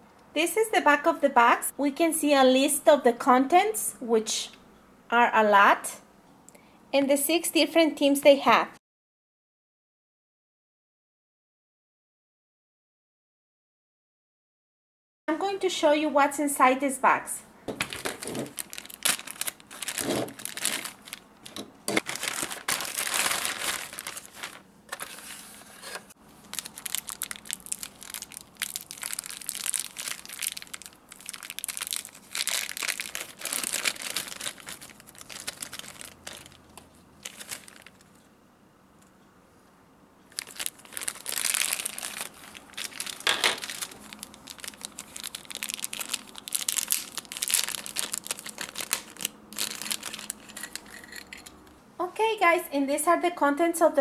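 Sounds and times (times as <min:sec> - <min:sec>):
packaging crinkling and tearing: 0:17.8 - 0:38.2, 0:40.3 - 0:51.2.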